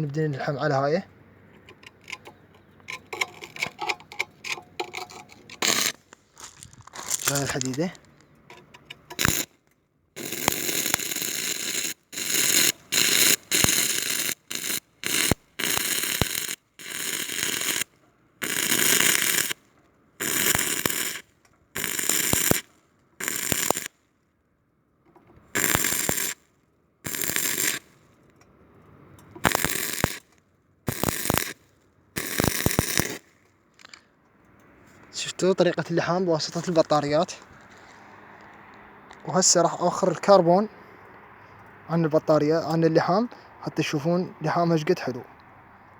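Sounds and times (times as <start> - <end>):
welding arc crackling: 4.8 - 8.0, 8.7 - 9.6, 10.2 - 19.6, 20.2 - 24.0, 25.6 - 26.4, 27.1 - 27.9, 29.4 - 30.3, 30.9 - 33.3.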